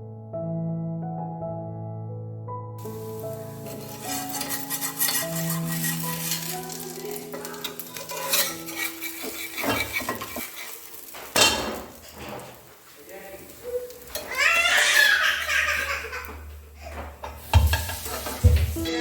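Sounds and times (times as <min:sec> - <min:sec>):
background music: 0:00.0 - 0:10.5, 0:18.4 - 0:19.0
utensil scraping a pan: 0:02.8 - 0:12.8, 0:16.8 - 0:19.0
batter sizzling in oil: 0:02.8 - 0:19.0.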